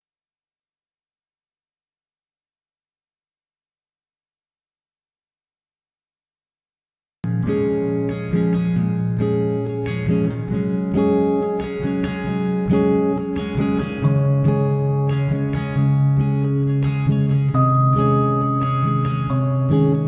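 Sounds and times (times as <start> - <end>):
acoustic guitar music: 7.3 - 20.0.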